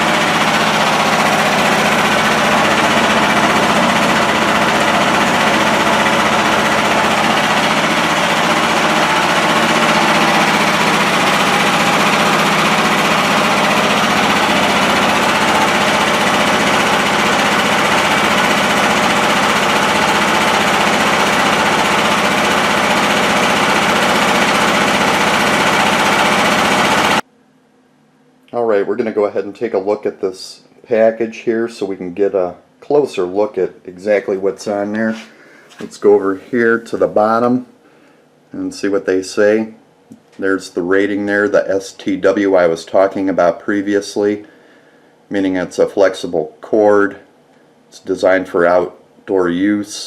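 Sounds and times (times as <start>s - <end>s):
generator engine running: 0.0s - 27.2s.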